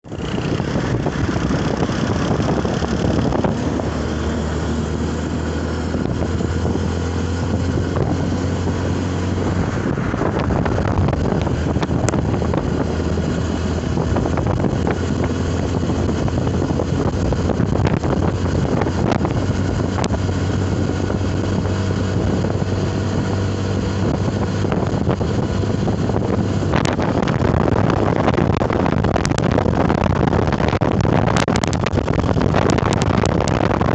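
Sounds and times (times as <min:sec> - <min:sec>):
road noise: 0:00.0 - 0:33.9
vehicle engine running: 0:00.0 - 0:33.9
wind on microphone: 0:00.0 - 0:33.9.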